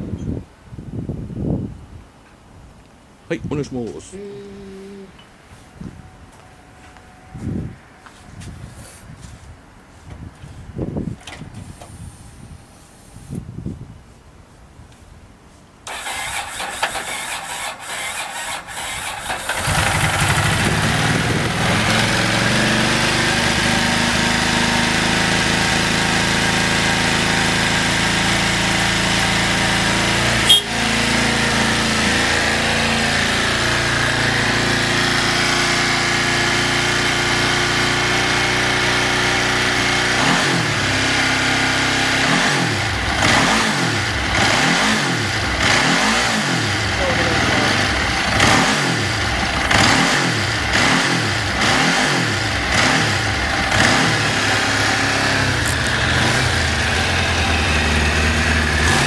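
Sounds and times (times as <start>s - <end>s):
motorcycle engine starting and idling: 15.9s - 59.0s.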